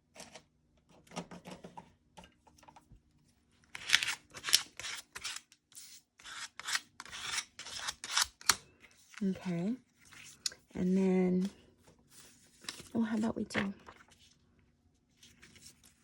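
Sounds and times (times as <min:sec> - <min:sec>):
paper handling: 0:12.1 - 0:14.3, 0:15.2 - 0:16.0.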